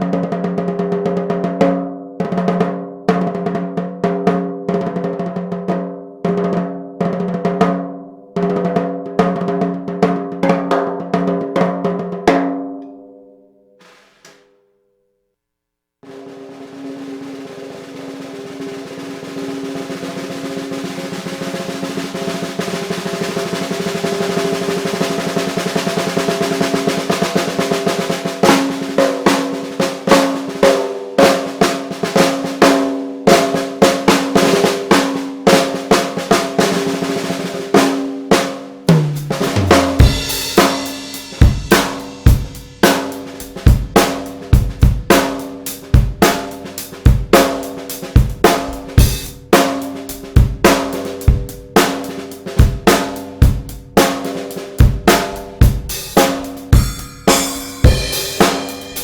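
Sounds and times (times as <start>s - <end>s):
snare drum roll and hits: 13.8s - 14.3s, 16.0s - 59.0s
bass drum: 38.9s - 52.0s, 52.6s - 54.1s, 54.8s - 59.0s
cymbal crash: 39.1s - 42.9s, 56.0s - 59.0s.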